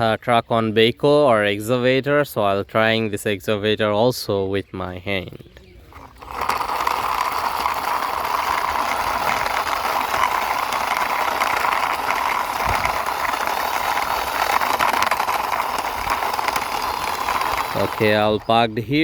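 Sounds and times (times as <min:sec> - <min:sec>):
toy wheels rolling and rattling: 0:05.5 - 0:19.0.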